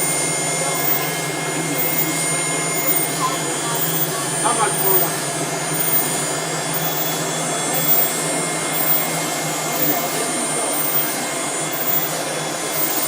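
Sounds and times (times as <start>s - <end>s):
engraving machine whirring: 0.0s - 13.0s.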